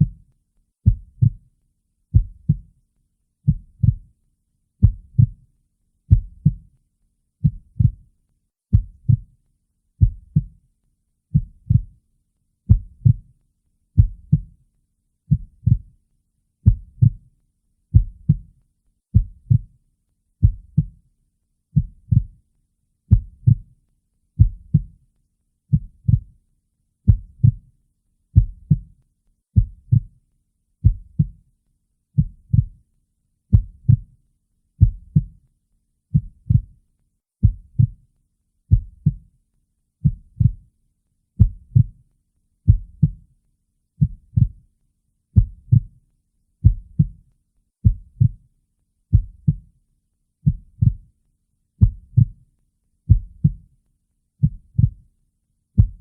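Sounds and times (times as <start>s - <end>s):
heartbeat thuds: 0.8s - 1.4s, 2.1s - 2.6s, 3.5s - 4.1s, 4.8s - 5.4s, 6.1s - 6.6s, 7.4s - 8.0s, 8.7s - 9.3s, 10.0s - 10.5s, 11.3s - 11.9s, 15.3s - 15.9s, 16.6s - 17.2s, 17.9s - 18.4s, 19.2s - 19.7s, 20.4s - 20.9s, 21.8s - 22.3s, 23.1s - 23.6s, 24.4s - 24.9s, 25.7s - 26.3s, 27.1s - 27.6s, 28.4s - 28.9s, 29.6s - 30.1s, 32.2s - 32.8s, 33.5s - 34.0s, 34.8s - 35.3s, 36.1s - 36.7s, 37.4s - 38.0s, 38.7s - 39.2s, 41.4s - 41.9s, 42.7s - 43.2s, 45.4s - 45.8s, 46.6s - 47.2s, 47.8s - 48.4s, 49.1s - 49.6s, 50.4s - 51.0s, 51.8s - 52.4s, 53.1s - 53.6s, 54.4s - 55.0s, 55.8s - 56.0s.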